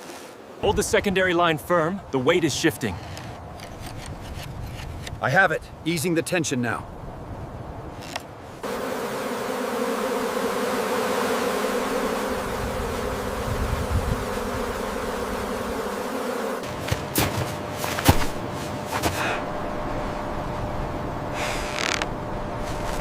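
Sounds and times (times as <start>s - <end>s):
bees buzzing: 8.6s - 23.0s.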